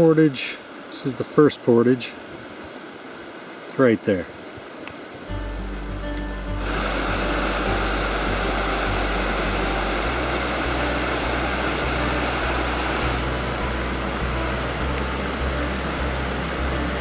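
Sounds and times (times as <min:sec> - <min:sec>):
river rapids rushing: 0:04.4 - 0:17.0
low bass background music: 0:05.3 - 0:17.0.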